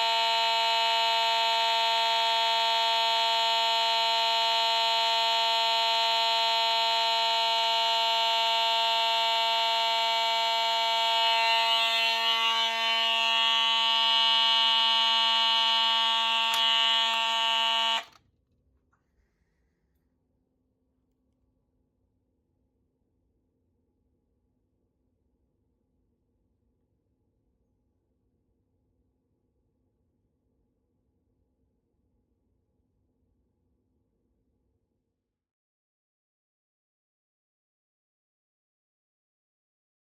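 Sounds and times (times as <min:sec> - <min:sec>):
fire alarm horn buzzing: 0:00.0 - 0:18.2.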